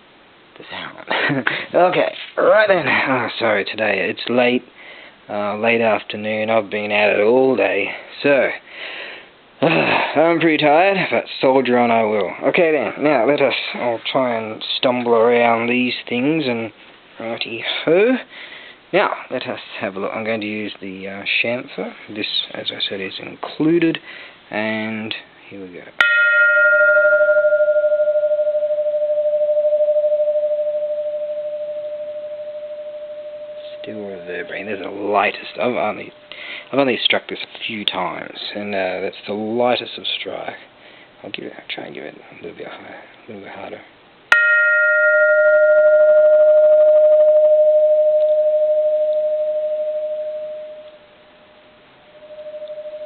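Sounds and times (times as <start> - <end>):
temple bell ringing: 26.0 - 36.4, 44.3 - 51.2, 52.1 - 53.0.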